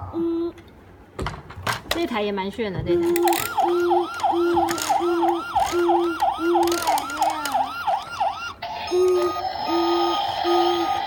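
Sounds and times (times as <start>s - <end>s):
electronic toy siren wailing: 3.0s - 11.0s.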